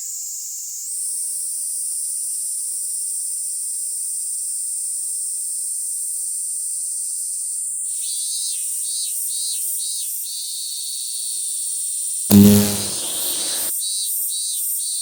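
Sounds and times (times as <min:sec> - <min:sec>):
high-pitched insect drone: 0:12.3 - 0:13.7
pulsing insect call: 0:12.3 - 0:13.7.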